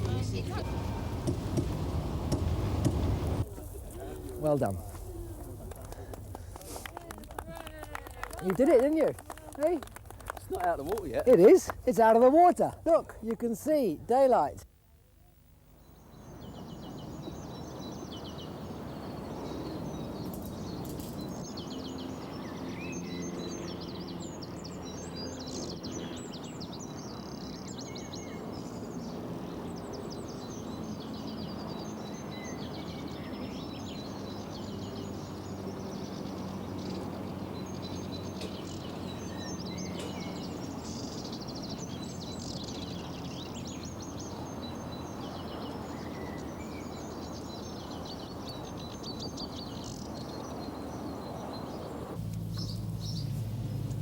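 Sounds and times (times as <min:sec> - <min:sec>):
small birds chirping: 0:15.4 - 0:54.0.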